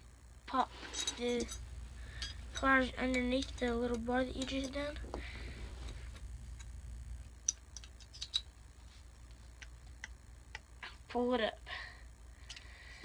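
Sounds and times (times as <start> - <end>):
pliers clicking on metal: 2.2 - 4.8, 7.4 - 8.5.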